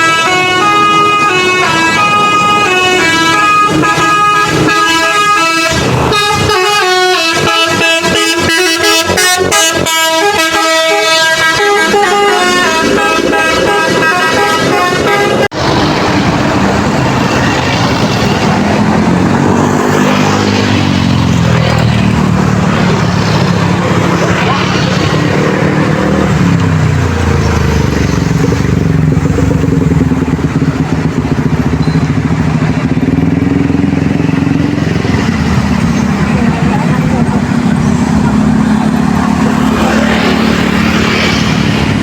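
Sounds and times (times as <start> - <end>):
multi-tone bus horn melody: 0.0 - 15.7
bus and motorcycle engines: 0.0 - 42.0
voices: 35.5 - 42.0.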